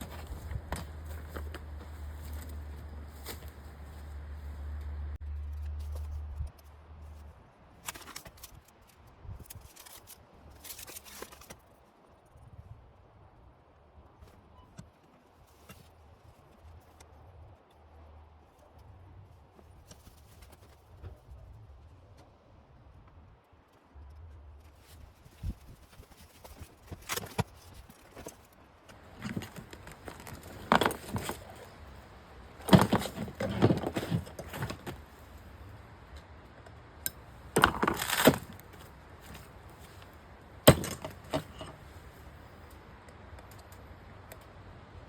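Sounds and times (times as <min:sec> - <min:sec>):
metal parts and tools clattering: 0:27.0 - 0:31.9, 0:32.6 - 0:35.1, 0:37.1 - 0:41.9.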